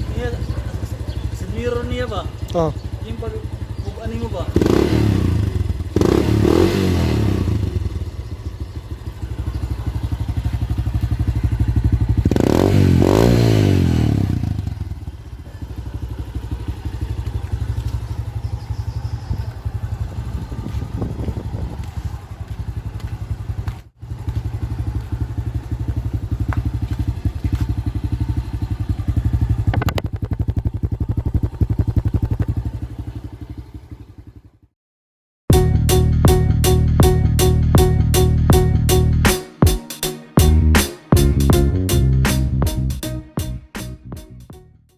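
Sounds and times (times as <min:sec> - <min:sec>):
two-stroke engine revving and idling: 0:00.0 - 0:34.7.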